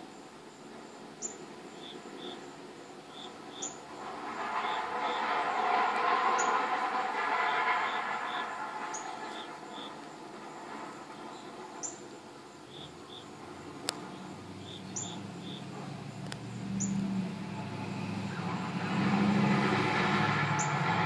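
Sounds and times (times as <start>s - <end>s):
distant humming rumble: 1.6s - 21.0s
bird chirps: 3.1s - 3.8s, 14.1s - 15.7s, 16.8s - 17.1s.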